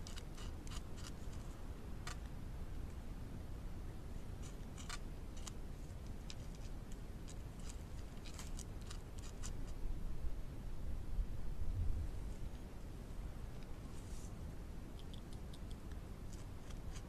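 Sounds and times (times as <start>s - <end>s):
beaver gnawing wood: 0.0s - 2.4s, 4.3s - 9.7s, 14.9s - 17.0s
low steady rumble: 0.0s - 17.0s.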